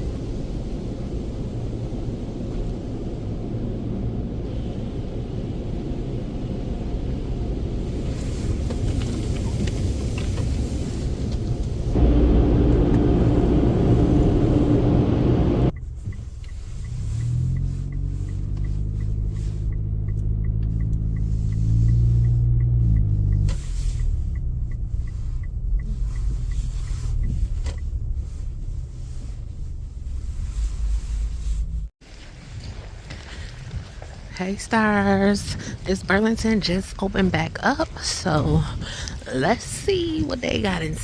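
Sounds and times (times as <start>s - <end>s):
car engine rumbling: 0.0s - 41.0s
faint regular ticking: 15.8s - 28.2s.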